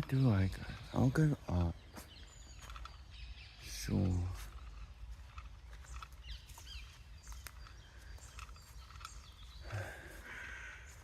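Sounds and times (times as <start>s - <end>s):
small birds chirping: 0.0s - 11.0s
crow cawing: 9.6s - 11.0s.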